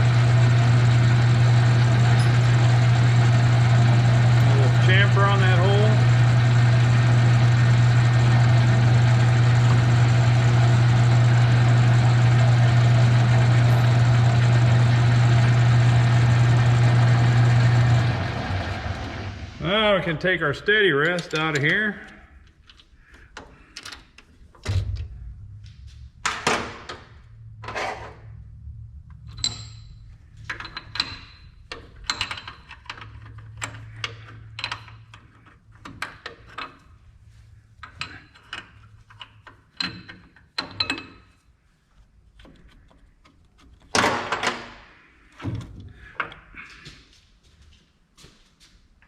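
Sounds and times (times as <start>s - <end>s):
metal clunks and clinks: 2.2s - 2.4s
low steady hum: 24.6s - 35.7s.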